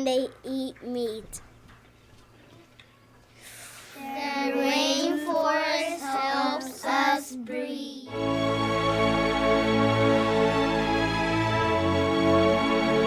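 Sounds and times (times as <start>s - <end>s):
child singing: 4.0s - 8.1s
instrumental music with chords: 8.1s - 13.0s.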